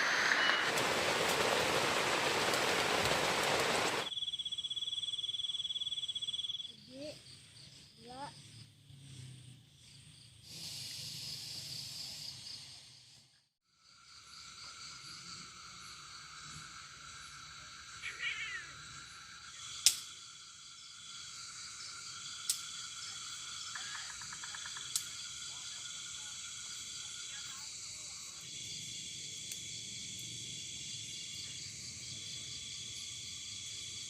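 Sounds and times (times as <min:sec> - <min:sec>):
insects shrilling: 0:15.1 - 0:30.2
frogs calling: 0:16.1 - 0:27.5.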